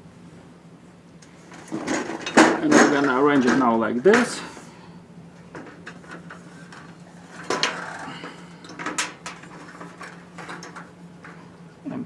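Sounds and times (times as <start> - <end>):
steady low hum: 0.0 - 12.0
sheet metal panels clanking: 1.5 - 4.7, 5.5 - 11.6.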